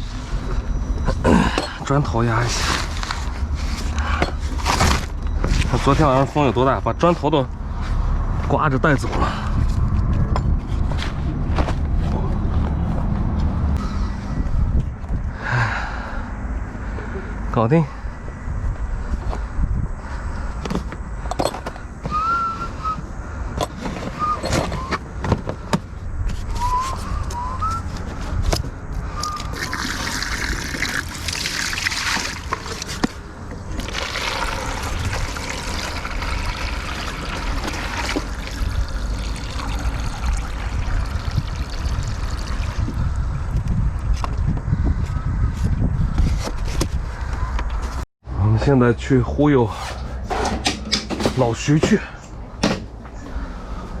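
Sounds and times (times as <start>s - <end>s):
wind buffeting microphone: 7.6s - 15.5s, 18.0s - 21.2s, 26.0s - 48.0s.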